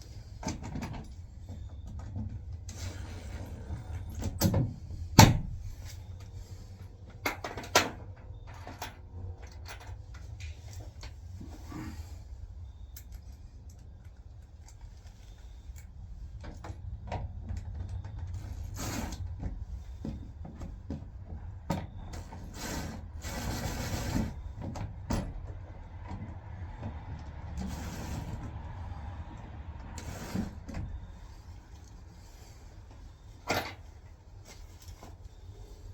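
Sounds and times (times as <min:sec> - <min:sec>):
rustling or scraping: 0:10.0 - 0:12.4, 0:18.2 - 0:20.9, 0:22.1 - 0:24.8, 0:27.0 - 0:29.2, 0:29.8 - 0:35.9.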